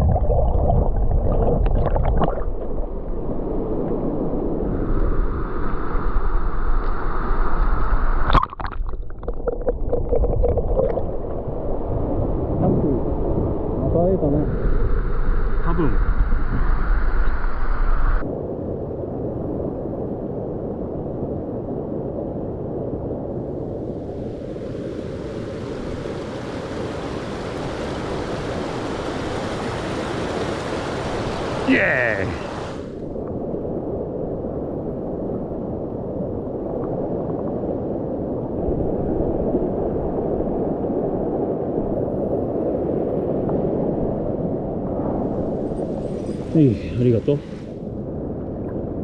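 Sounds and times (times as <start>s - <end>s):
mountain stream rushing: 24.7s - 33.0s, 45.8s - 47.8s.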